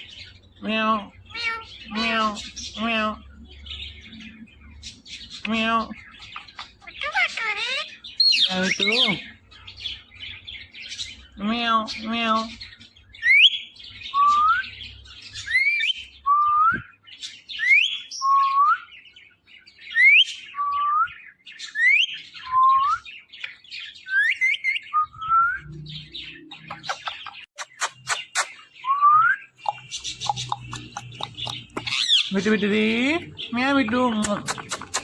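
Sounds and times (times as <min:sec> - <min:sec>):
sharp clicks: 0:34.2 - 0:35.0.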